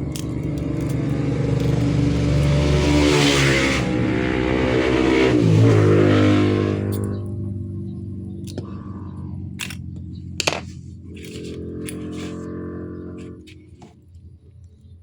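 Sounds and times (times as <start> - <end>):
vehicle engine revving and passing: 0.0 - 13.9.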